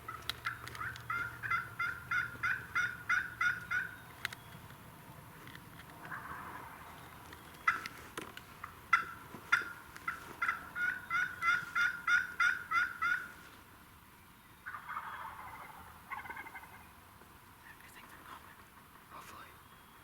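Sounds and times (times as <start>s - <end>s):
turkey rattling call: 0.0s - 5.1s, 5.9s - 13.4s, 14.6s - 16.9s
wild turkey calls: 0.0s - 13.8s, 14.5s - 20.0s.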